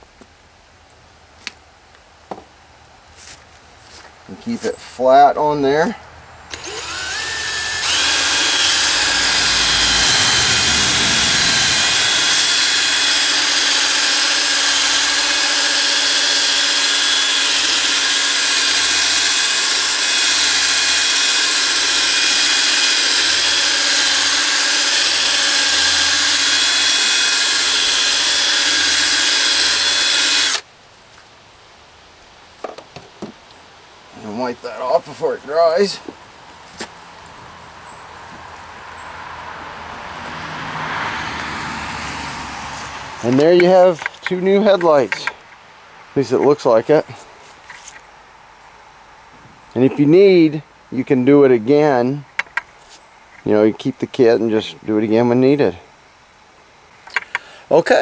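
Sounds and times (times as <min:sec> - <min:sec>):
electric drill buffing plastic: 0:06.5 - 0:30.6.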